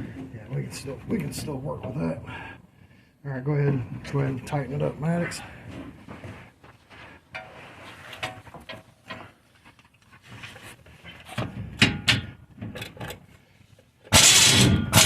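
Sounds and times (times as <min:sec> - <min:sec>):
metal tools clicking and clunking: 0:11.3 - 0:13.3.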